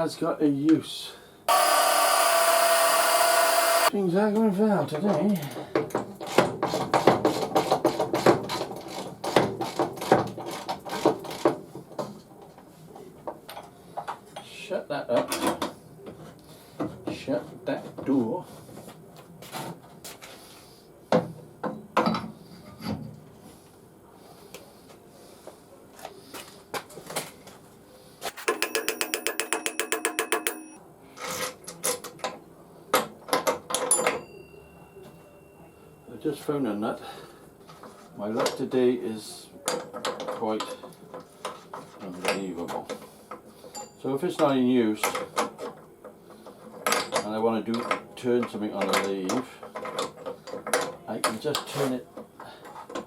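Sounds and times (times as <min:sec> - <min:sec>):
fast ratchet clicking: 0:28.3 - 0:30.8
metal tools clinking: 0:28.3 - 0:30.8.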